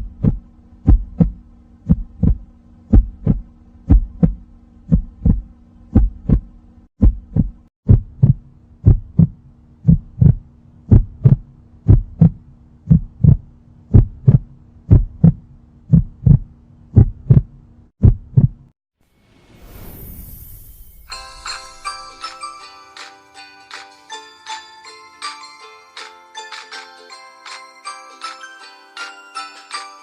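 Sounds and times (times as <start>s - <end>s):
heartbeat thumps: 0.0s - 18.7s
low steady hum: 0.0s - 18.7s.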